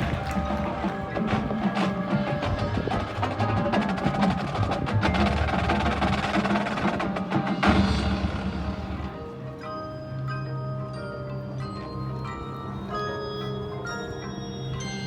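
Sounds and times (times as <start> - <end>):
marching band playing: 0.0 - 9.6.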